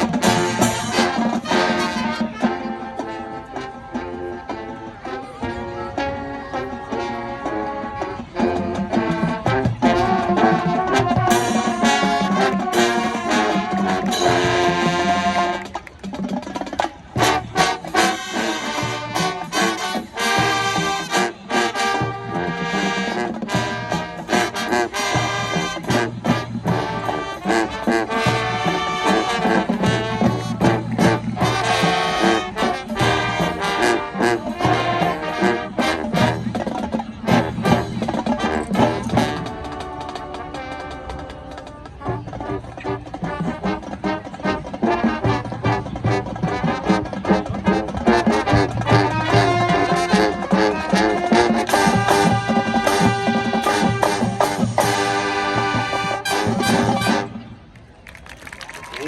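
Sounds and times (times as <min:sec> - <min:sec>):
drums: 0:00.0 - 0:59.0
marching band playing: 0:00.0 - 0:59.0
trombones and trumpets: 0:00.0 - 0:59.0.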